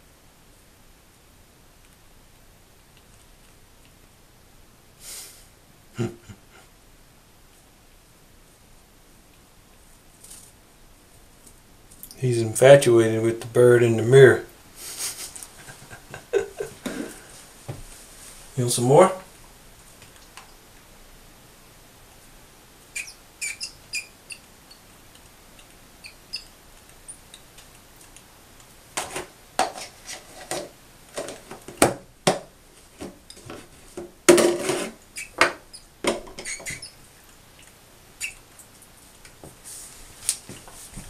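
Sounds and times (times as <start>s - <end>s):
bird high peeps: 22.9s - 24.8s, 26.0s - 27.4s, 35.2s - 37.0s, 38.2s - 38.4s.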